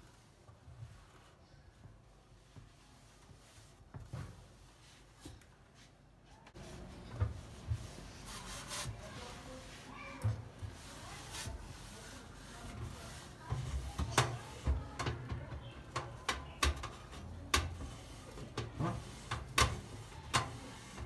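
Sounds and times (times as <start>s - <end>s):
household objects clicking and knocking: 13.5s - 21.0s.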